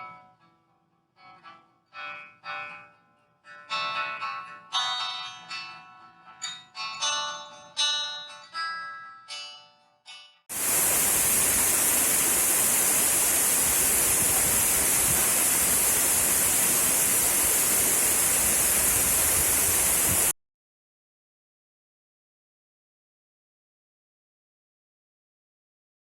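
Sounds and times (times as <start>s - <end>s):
waterfall roaring: 10.5s - 20.3s.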